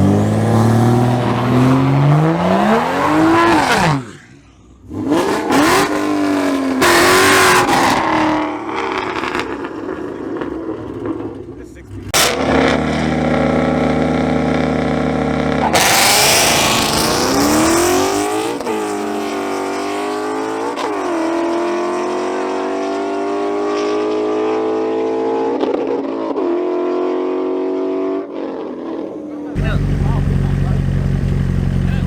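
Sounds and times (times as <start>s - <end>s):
car engine at full throttle: 0.0s - 32.0s.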